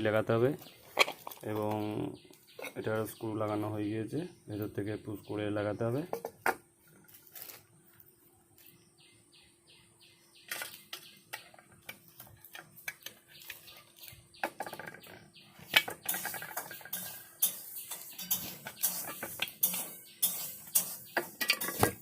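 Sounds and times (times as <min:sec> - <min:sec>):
bird chirping: 0:00.0 - 0:07.0, 0:07.8 - 0:22.0
pressure cooker parts clicking: 0:15.7 - 0:22.0.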